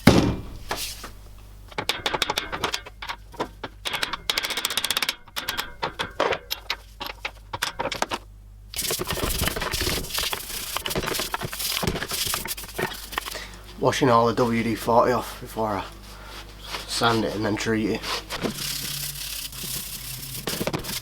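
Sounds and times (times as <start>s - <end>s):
hand tools scraping rusty metal: 1.8s - 13.5s, 14.4s - 21.0s
steady hiss: 8.7s - 21.0s.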